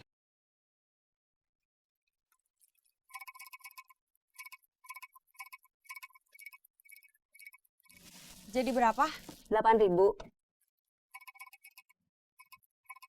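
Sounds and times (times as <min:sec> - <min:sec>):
faint ticking with ringing tone: 0:03.1 - 0:08.0, 0:11.1 - 0:13.0.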